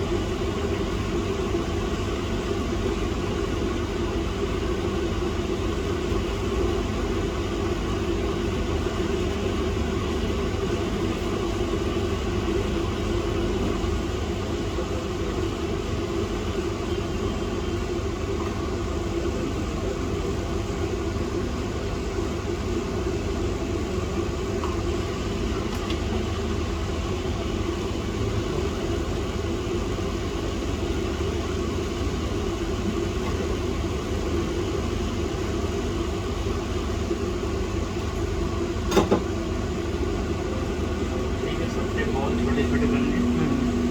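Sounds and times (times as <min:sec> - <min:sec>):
machine hum: 0:40.7 - 0:43.9.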